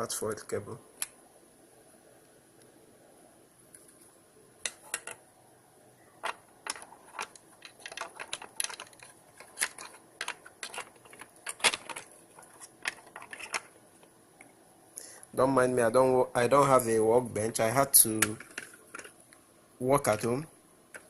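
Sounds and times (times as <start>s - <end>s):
plastic parts clicking and tapping: 4.6s - 5.2s, 6.2s - 14.5s, 18.1s - 19.2s.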